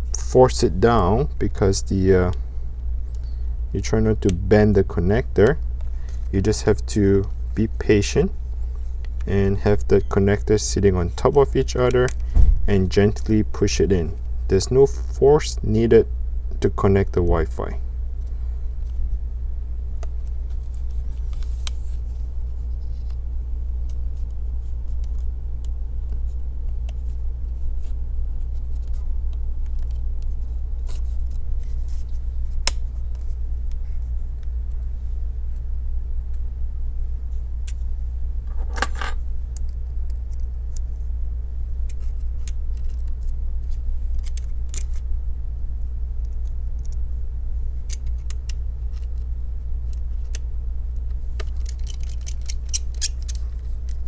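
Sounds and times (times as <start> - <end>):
steady low hum: 0.0 - 54.0
small metal parts rattling: 38.5 - 39.2, 51.3 - 54.0.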